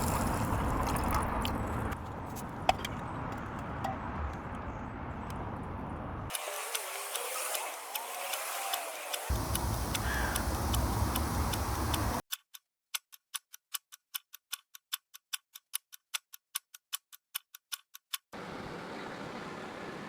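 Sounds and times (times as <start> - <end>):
fast clock ticking: 6.7 - 18.3
steady rumbling background noise: 9.3 - 12.2.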